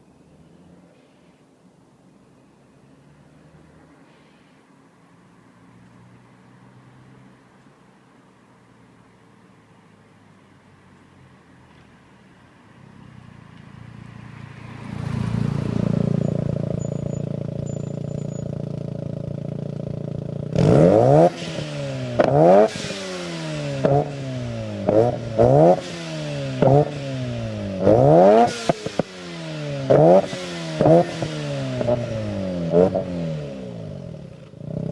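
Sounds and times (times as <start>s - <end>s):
engine revving in sharp blips: 14.6s - 19.7s, 20.4s - 34.9s.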